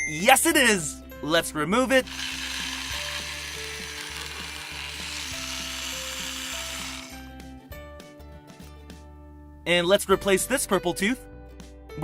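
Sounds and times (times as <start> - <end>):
toy drill spinning: 2.0 - 7.3.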